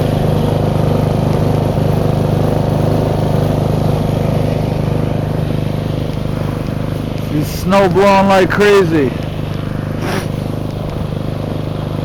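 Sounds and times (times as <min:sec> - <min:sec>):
snowblower engine running: 0:00.0 - 0:12.0.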